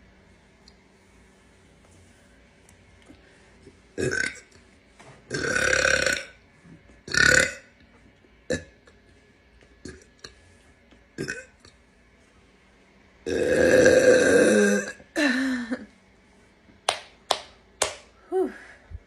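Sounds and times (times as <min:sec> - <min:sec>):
woman burping: 0:04.0 - 0:04.5, 0:08.5 - 0:08.8, 0:11.2 - 0:11.6, 0:13.3 - 0:15.9.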